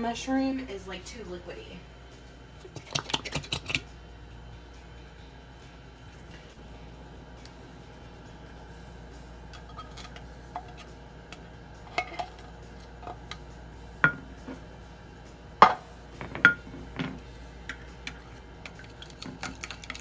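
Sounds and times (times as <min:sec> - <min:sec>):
utensil clinking on metal cookware: 0:09.5 - 0:10.9, 0:11.9 - 0:13.4.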